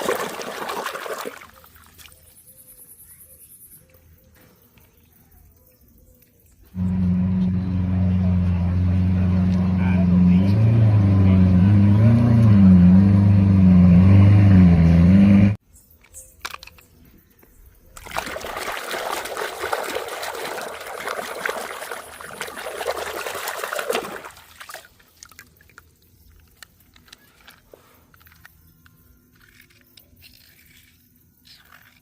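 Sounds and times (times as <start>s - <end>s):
water splashing: 0.0s - 2.2s, 18.0s - 26.0s
engine-like drone: 6.7s - 15.6s
faint clicks and handling: 25.7s - 32.0s.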